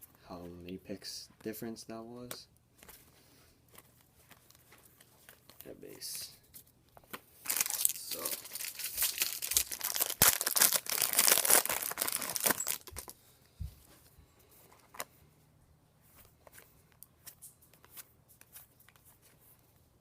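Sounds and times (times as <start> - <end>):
card pack wrapper tearing and crinkling: 7.4 - 13.2.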